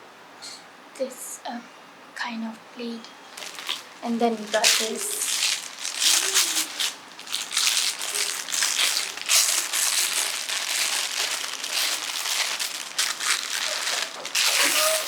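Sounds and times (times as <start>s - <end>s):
packaging and clothing rustling: 3.3s - 15.0s.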